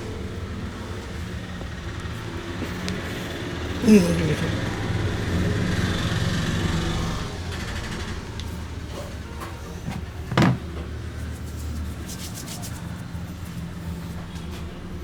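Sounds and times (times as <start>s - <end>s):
hands massaging head: 11.2s - 13.6s.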